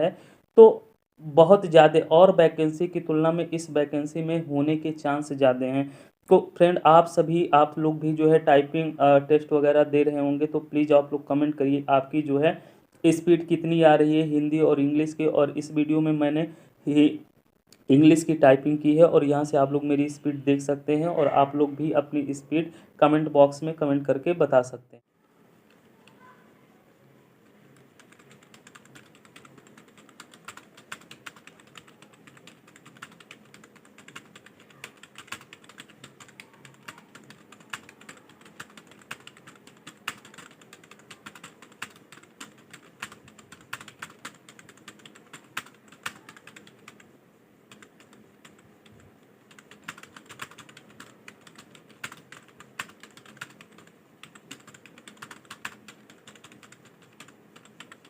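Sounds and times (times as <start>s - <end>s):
rapid typing on keyboard: 27.4s - 47.1s, 47.7s - 58.0s.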